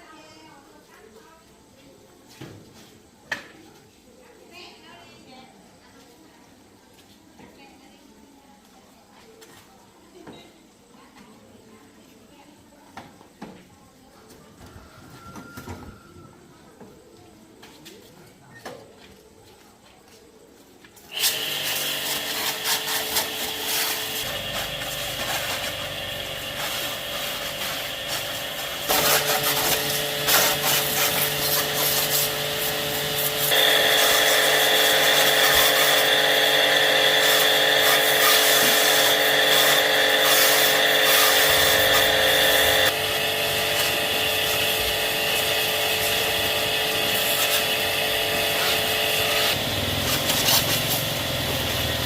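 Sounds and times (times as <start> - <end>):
power tool running: 21.1 - 52.0.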